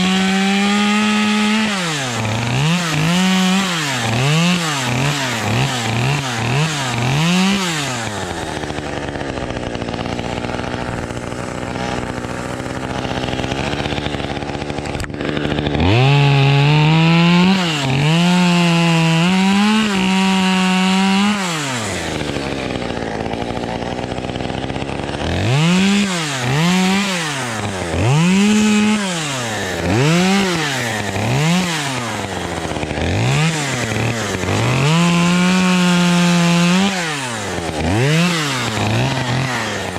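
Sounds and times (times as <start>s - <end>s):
two-stroke chainsaw engine revving: 0.0s - 39.9s.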